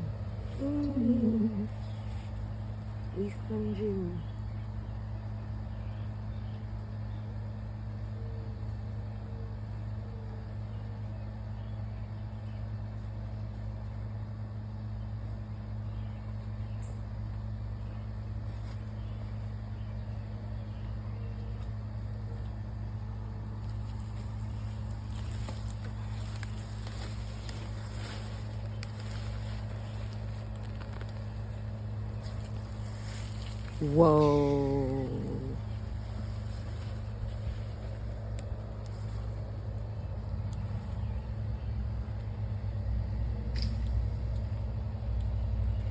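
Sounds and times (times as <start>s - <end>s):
low mechanical hum: 0.0s - 45.9s
rustling and scraping: 22.0s - 34.2s, 35.6s - 39.9s
scratchy crackle: 22.0s - 41.0s.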